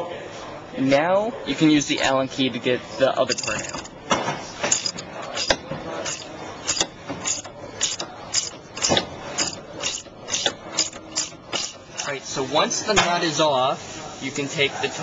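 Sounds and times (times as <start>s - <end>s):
wrench ratcheting metal clicks: 3.3s - 3.9s, 4.7s - 12.1s.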